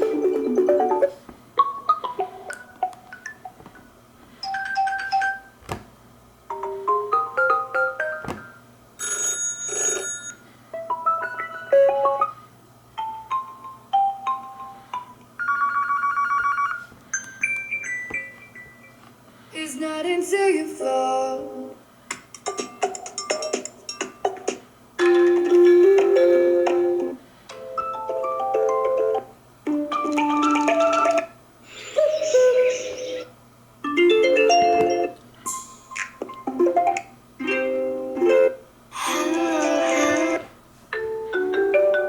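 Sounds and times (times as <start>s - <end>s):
chiming ringtone melodies: 4.4s - 5.5s, 9.0s - 12.4s, 13.0s - 19.0s, 41.0s - 42.0s
trilling phone ring: 8.0s - 10.4s, 15.4s - 19.0s.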